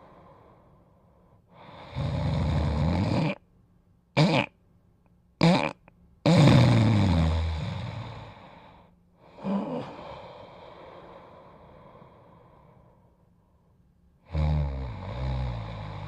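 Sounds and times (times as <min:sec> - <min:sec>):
person snoring and snorting: 0:01.6 - 0:03.4, 0:04.2 - 0:04.5, 0:05.4 - 0:08.5, 0:09.3 - 0:11.6, 0:14.2 - 0:16.0.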